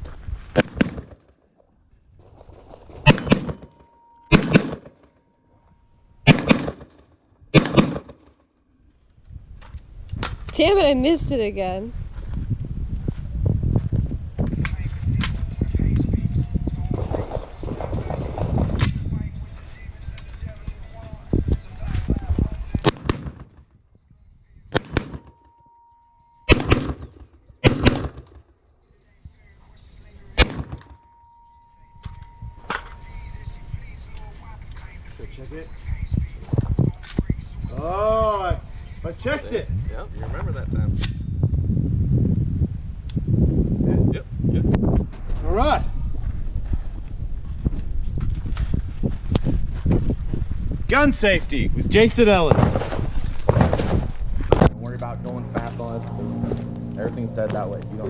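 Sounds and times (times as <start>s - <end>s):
gunshots: 0.6s - 1.3s, 2.2s - 5.2s, 6.2s - 8.4s, 22.8s - 23.6s, 24.7s - 25.5s, 26.5s - 28.4s, 30.4s - 31.0s, 52.3s - 54.7s
rifle shots with echo: 2.6s - 5.2s, 6.2s - 8.3s, 22.8s - 23.6s, 24.7s - 25.6s, 26.5s - 28.4s, 30.3s - 31.1s, 52.4s - 54.7s.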